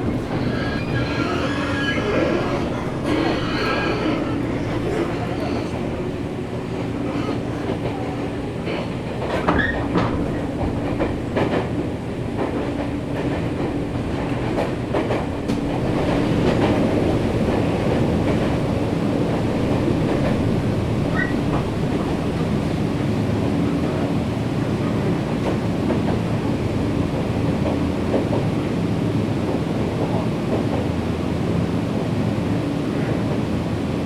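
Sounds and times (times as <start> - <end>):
wheel squeals: 0.0 - 6.1, 21.1 - 21.5
rail-joint clacks: 0.0 - 31.6
train wheels rumbling: 0.0 - 34.0.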